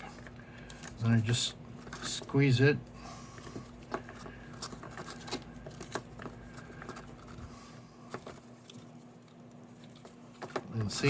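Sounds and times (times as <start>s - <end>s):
faint steady hum: 0.0s - 11.0s
paper card being handled: 3.4s - 11.0s.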